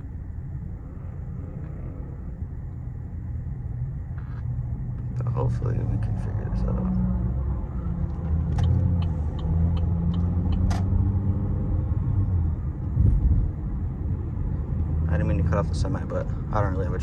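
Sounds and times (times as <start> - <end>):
car engine and road noise: 0.0 - 17.0.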